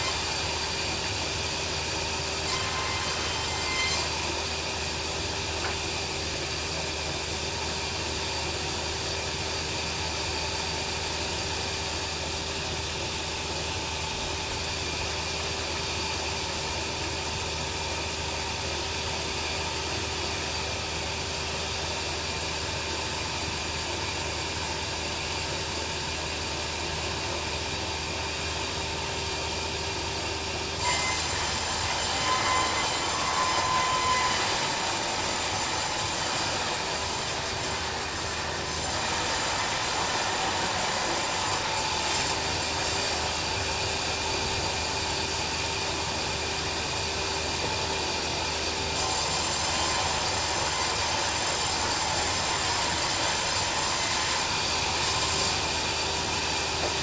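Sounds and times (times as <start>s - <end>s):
bandsaw blade cutting log: 0.0s - 6.2s, 30.8s - 44.5s, 48.9s - 57.0s.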